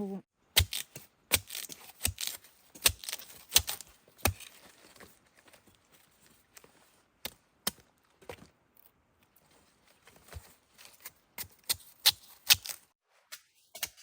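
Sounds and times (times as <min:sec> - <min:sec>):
blade chopping plant stems: 0:00.6 - 0:04.6.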